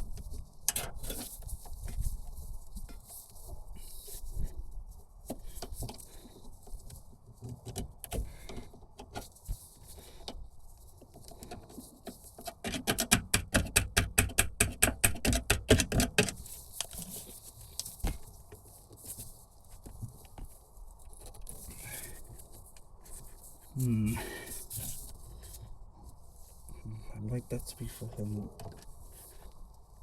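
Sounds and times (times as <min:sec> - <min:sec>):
metal parts knocking and rattling: 0:12.4 - 0:17.2.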